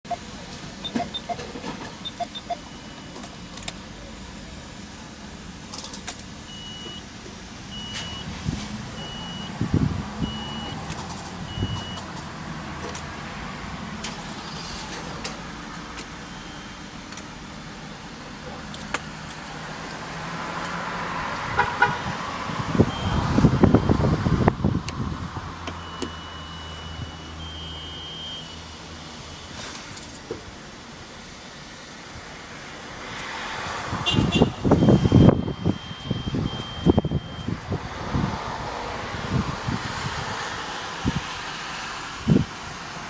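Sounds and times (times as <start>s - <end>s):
car warning chime beeping: 0.1s - 21.0s, 22.5s - 29.6s, 34.0s - 37.8s
keys jangling: 18.6s - 20.3s.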